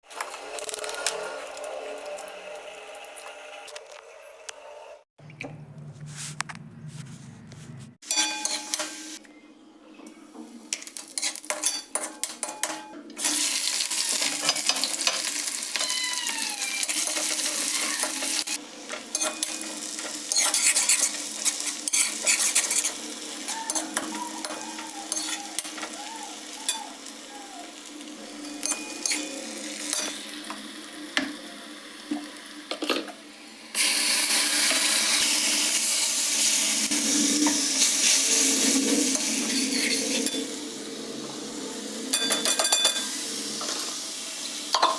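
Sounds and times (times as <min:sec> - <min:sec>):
food sizzling in hot oil: 0:08.1 - 0:09.2, 0:13.2 - 0:44.9.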